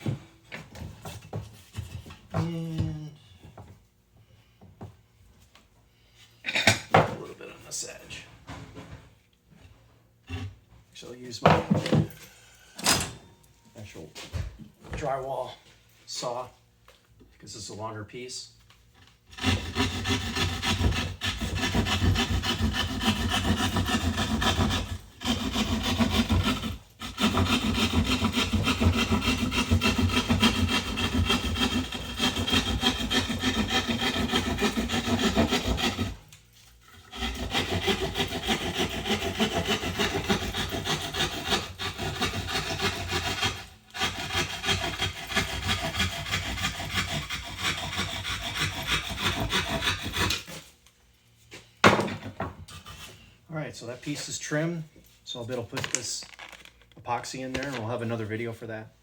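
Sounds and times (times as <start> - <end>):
hand saw cutting drywall: 19.3 - 36.3, 36.9 - 50.7, 52.6 - 53.2.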